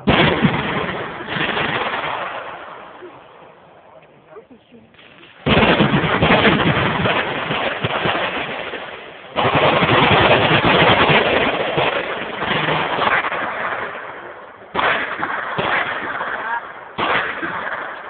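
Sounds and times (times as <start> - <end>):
machine guns firing: 5.0 - 13.9, 14.7 - 18.0.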